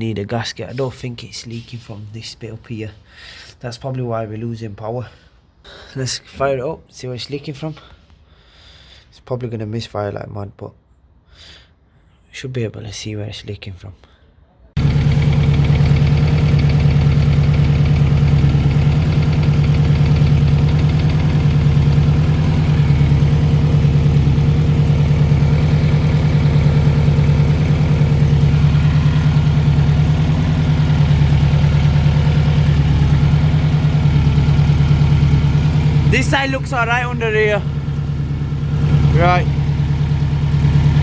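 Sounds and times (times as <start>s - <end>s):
car engine idling: 14.8s - 41.0s.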